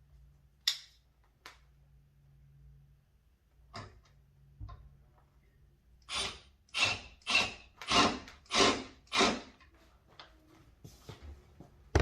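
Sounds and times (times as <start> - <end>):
screw rasping into wood: 6.1 - 9.5.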